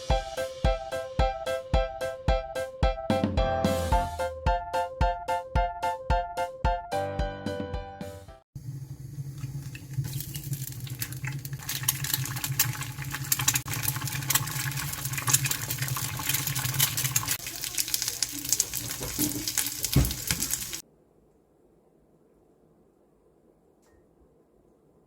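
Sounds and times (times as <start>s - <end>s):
food sizzling in a hot pan: 8.6s - 20.8s.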